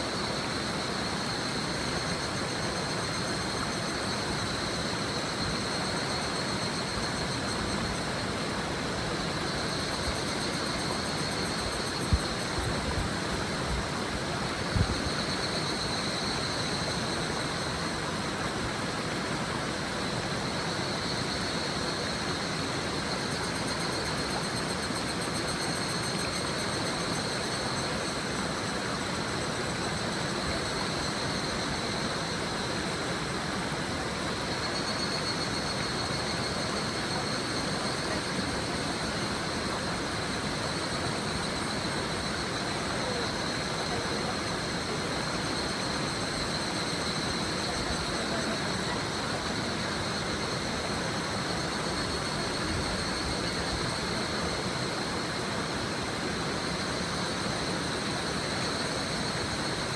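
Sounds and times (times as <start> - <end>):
cicadas calling: 0.0 - 59.9
river babbling: 0.0 - 59.9.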